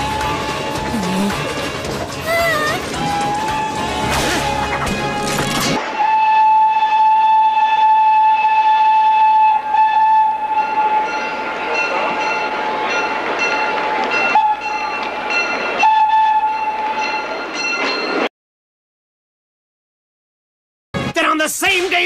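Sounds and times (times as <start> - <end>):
train whistle blowing: 0.0 - 0.9, 2.8 - 4.6, 5.9 - 11.4, 15.8 - 17.0
running train: 0.0 - 18.3.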